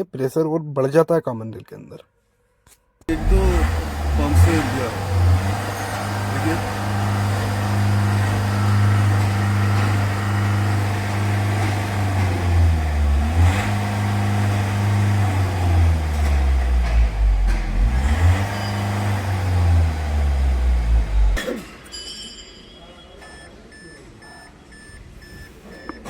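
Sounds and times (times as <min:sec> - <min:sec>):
diesel engine running: 0:03.1 - 0:21.4.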